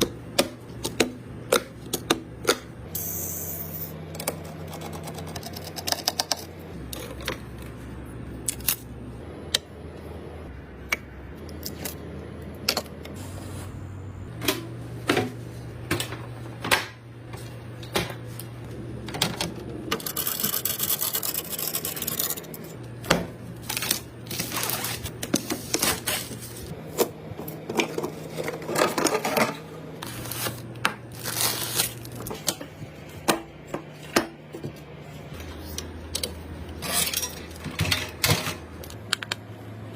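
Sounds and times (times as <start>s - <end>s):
computer parts clicking and scraping: 19.2s - 22.8s.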